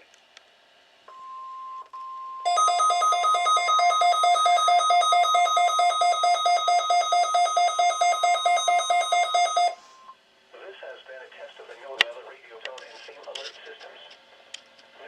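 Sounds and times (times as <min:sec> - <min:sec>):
steady warning alarm tone: 0:01.1 - 0:10.2
rapid electronic beeping: 0:02.5 - 0:10.1.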